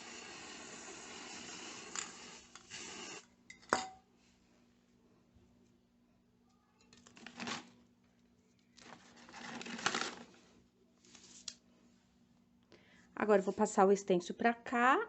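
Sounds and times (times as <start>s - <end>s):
spray-paint can hissing: 0.0s - 3.2s.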